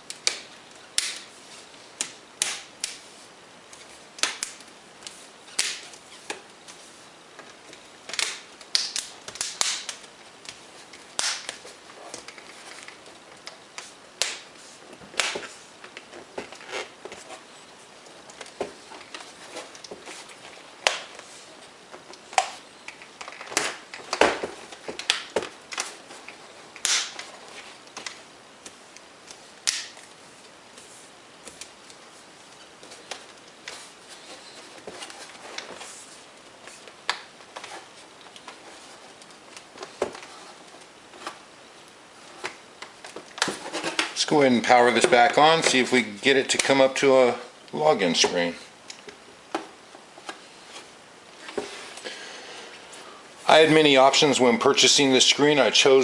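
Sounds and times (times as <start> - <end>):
plastic clips snapping: 8.1 - 10.6, 11.2 - 14.5, 22.0 - 27.3, 27.9 - 30.2.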